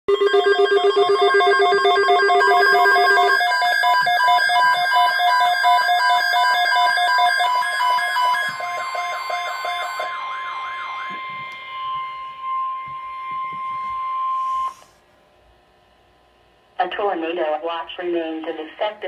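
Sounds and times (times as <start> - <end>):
emergency alert tones: 0.1 - 14.9.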